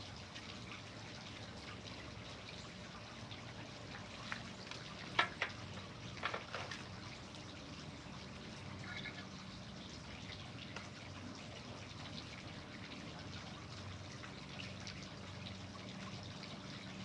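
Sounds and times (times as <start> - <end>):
light clicks and taps: 4.3 - 6.8.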